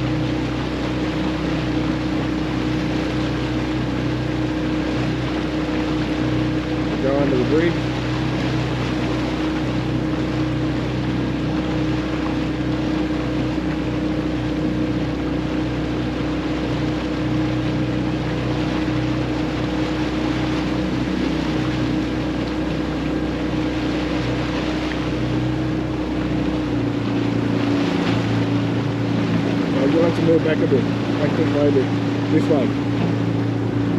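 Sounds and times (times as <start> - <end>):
small boat engine running: 0.0 - 33.9
water noise: 0.0 - 33.9
wind: 0.0 - 33.9.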